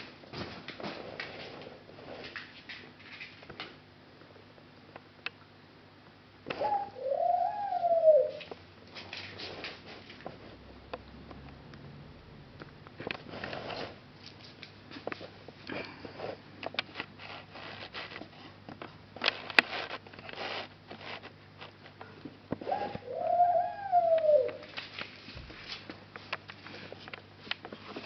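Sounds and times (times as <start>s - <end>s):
light clicks and rustles: 0.0s - 3.8s, 8.4s - 11.6s, 12.6s - 22.7s, 24.2s - 28.0s.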